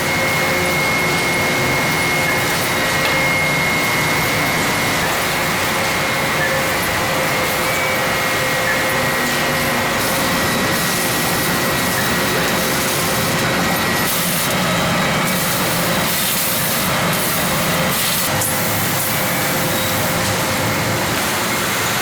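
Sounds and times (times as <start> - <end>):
constant high whine: 0.0 - 22.0
noodle machines running: 0.0 - 22.0.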